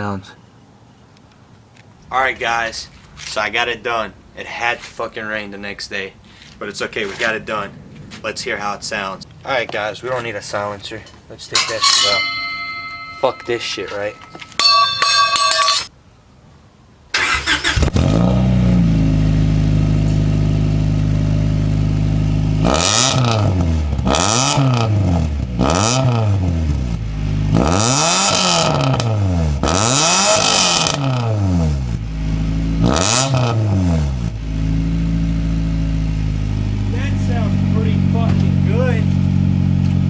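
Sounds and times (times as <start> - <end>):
car engine idling and revving: 17.4 - 40.0.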